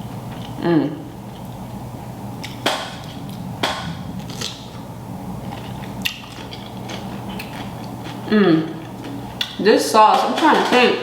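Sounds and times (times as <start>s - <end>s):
steady low hum: 0.0s - 11.0s
eating crackles and smacks: 5.4s - 9.6s.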